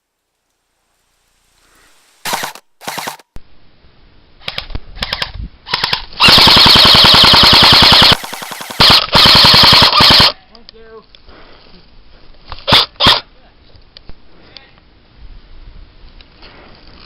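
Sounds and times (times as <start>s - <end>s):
airsoft guns firing full auto: 2.3s - 3.2s, 5.0s - 10.4s, 12.7s - 13.2s.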